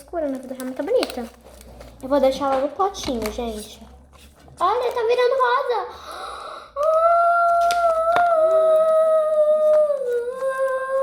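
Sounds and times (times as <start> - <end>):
girl humming a long note: 6.8 - 11.0.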